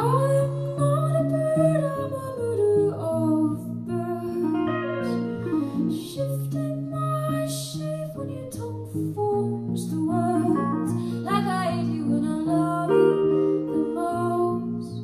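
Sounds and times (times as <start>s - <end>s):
guitar notes bending: 0.0s - 8.1s.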